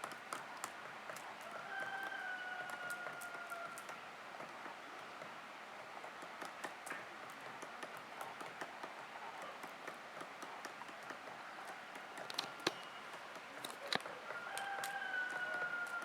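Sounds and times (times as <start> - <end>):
woodpecker pecking at wood: 5.9 - 16.0.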